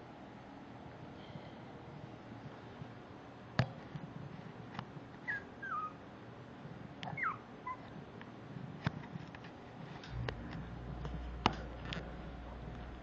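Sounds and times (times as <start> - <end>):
puppies whimpering: 5.3 - 6.0, 7.1 - 7.8.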